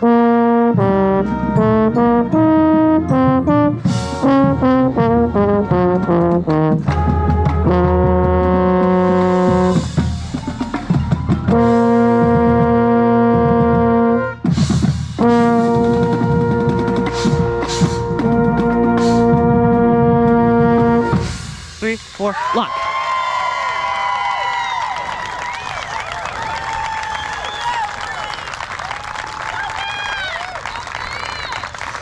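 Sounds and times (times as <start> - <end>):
euphonium notes: 0.0 - 14.5
marching band brass playing: 0.0 - 22.4
percussion hits: 1.2 - 22.7.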